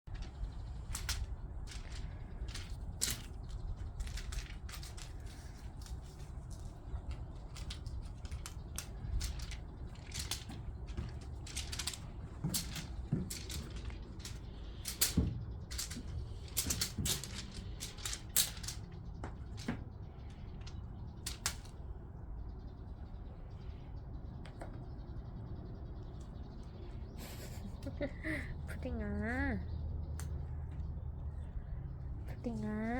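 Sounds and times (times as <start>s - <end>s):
crinkly cat toy rustling: 0.0s - 21.8s.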